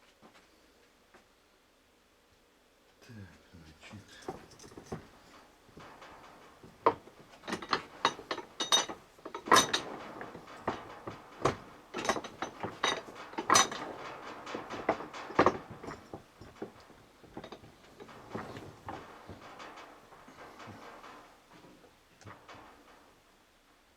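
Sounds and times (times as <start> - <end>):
metal parts clinking and knocking: 4.2 - 23.1.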